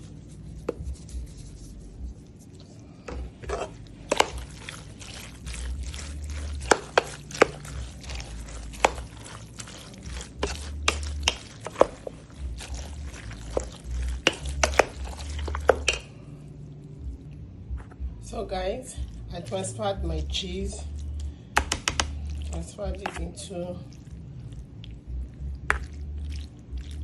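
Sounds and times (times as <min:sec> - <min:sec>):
utensil scraping against a bowl: 0:03.4 - 0:16.1.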